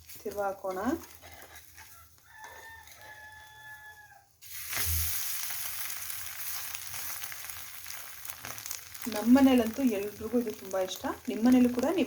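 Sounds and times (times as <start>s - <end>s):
food sizzling in a pan: 4.4s - 12.0s.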